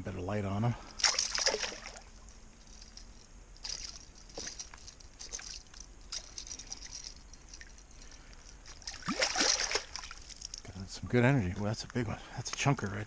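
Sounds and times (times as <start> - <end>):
fish splashing at water surface: 1.0 - 2.1, 3.6 - 6.9, 8.6 - 10.6.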